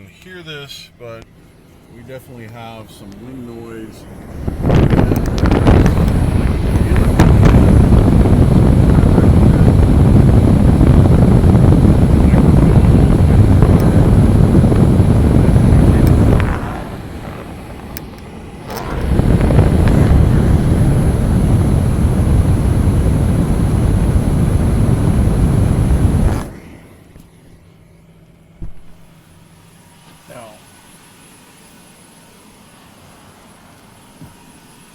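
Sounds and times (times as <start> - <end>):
blower rush of air: 0.6 - 27.6.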